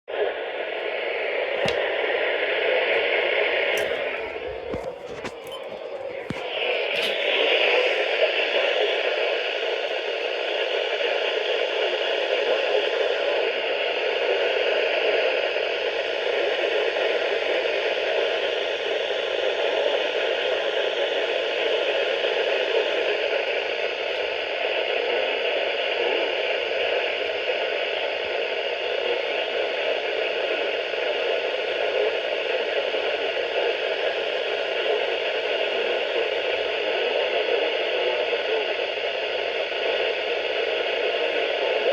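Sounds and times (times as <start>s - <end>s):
radio static hiss: 0.1s - 18.4s, 21.2s - 41.9s.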